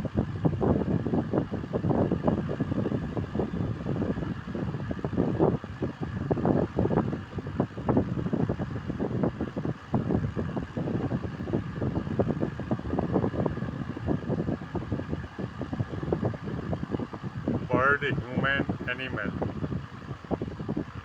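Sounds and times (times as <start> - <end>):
wind buffeting microphone: 0.0 - 21.0.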